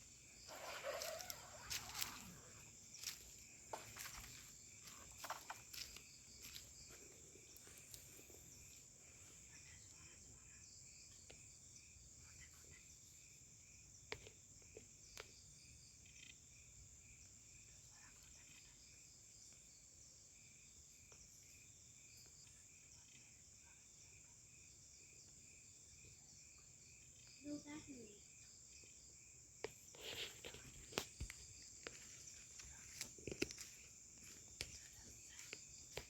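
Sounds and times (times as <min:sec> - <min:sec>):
cricket chirping: 0:00.0 - 0:36.0
high-pitched insect buzz: 0:00.1 - 0:06.6.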